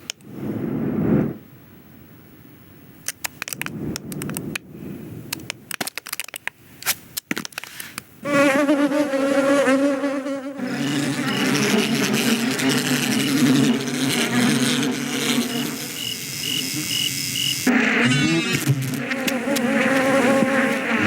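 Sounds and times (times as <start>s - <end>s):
small sharp clicks and ticks: 0.0s - 0.3s, 3.0s - 4.7s, 5.3s - 8.1s
insect wing buzz: 8.2s - 21.0s.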